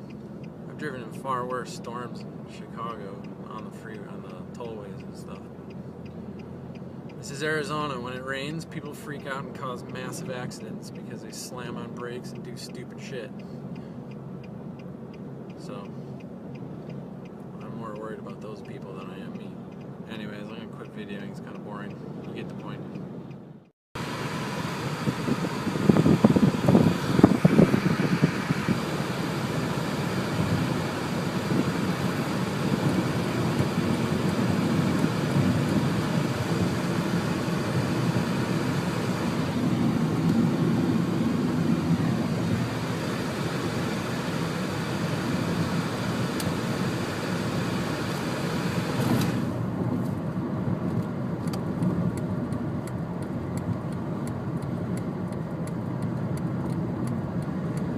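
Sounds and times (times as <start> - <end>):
vehicle engine and tyre rumble: 0.0 - 57.9.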